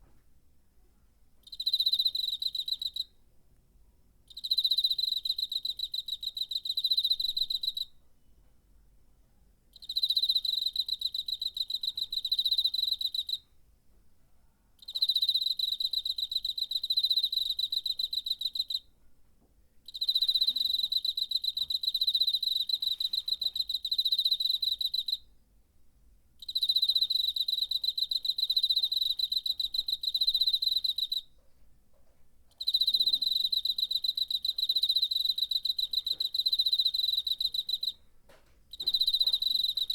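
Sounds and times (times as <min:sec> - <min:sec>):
cricket trilling: 0:01.5 - 0:03.1, 0:09.8 - 0:13.4, 0:14.8 - 0:18.9, 0:19.9 - 0:25.2, 0:26.4 - 0:31.3, 0:32.6 - 0:38.0, 0:38.7 - 0:39.9.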